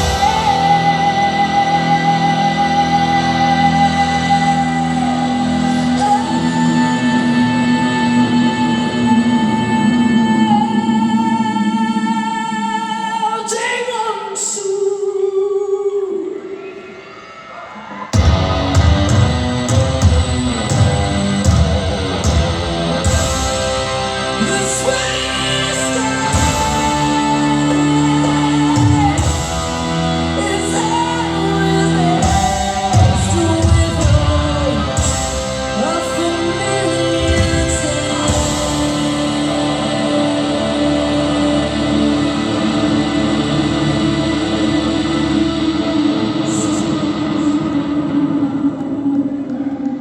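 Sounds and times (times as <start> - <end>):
live rock accompaniment: 0.0 - 9.8, 18.2 - 49.0
guitar and bass chords: 0.0 - 12.5, 18.2 - 48.9
woman singing long notes: 0.0 - 16.4, 24.3 - 35.1
drum hits: 18.2 - 24.0.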